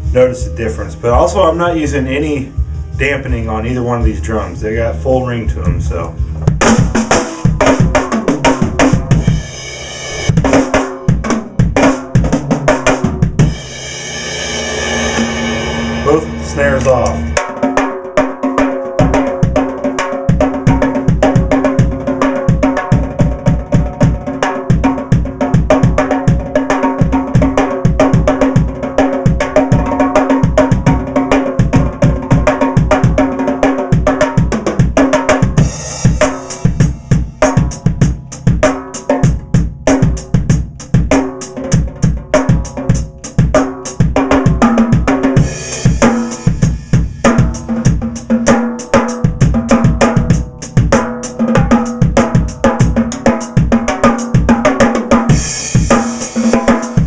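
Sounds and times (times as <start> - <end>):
snare drums ringing: 14.7 - 17.7.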